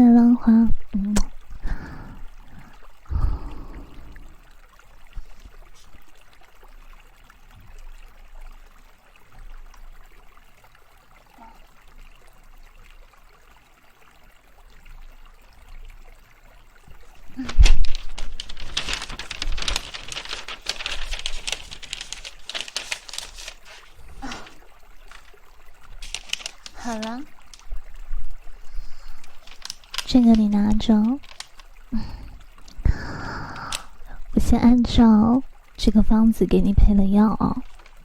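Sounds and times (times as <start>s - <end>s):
scratchy rustling: 17.4s - 25.3s, 25.9s - 27.6s, 28.9s - 31.7s.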